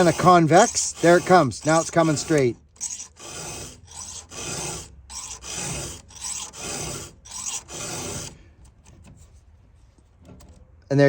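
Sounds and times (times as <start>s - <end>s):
file rasping on saw chain: 0.0s - 8.4s.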